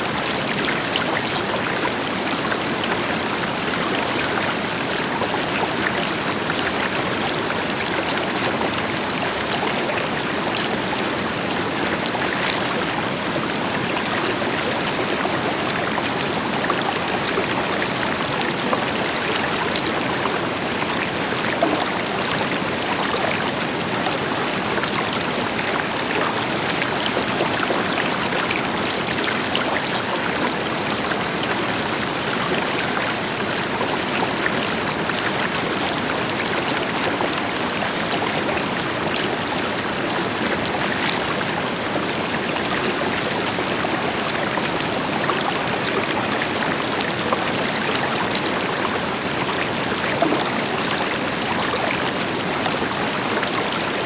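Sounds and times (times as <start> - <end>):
river flowing over rocks: 0.2 - 54.0
small water splashes: 20.4 - 23.6, 48.9 - 54.0.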